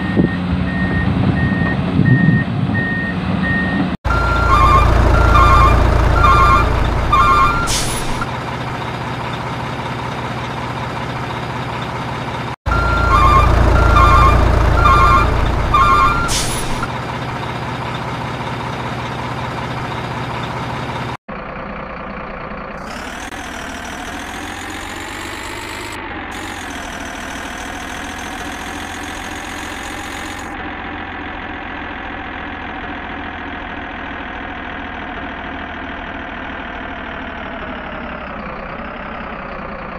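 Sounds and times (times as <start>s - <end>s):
diesel engine: 0.0s - 39.9s
reversing alarm beeps: 0.1s - 8.3s, 12.7s - 16.9s
air brake hiss: 16.3s - 16.8s.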